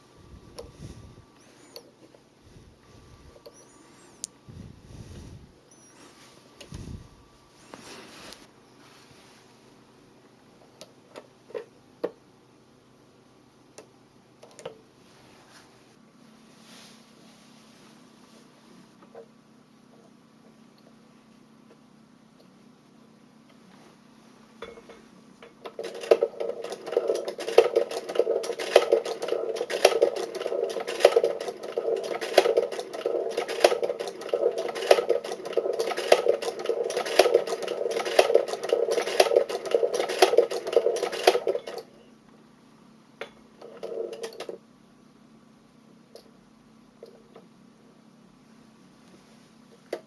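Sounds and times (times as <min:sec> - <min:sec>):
sewing machine clattering: 0:25.6 - 0:41.9, 0:43.6 - 0:44.6.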